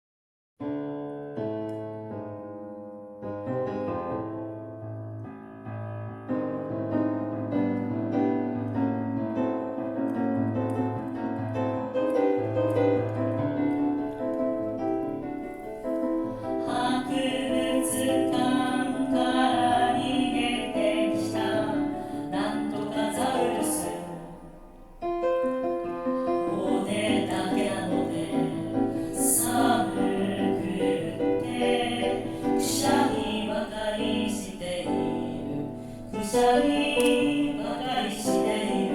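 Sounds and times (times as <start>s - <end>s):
piano accompaniment: 0.6s - 38.9s
person singing children's song: 26.3s - 35.5s.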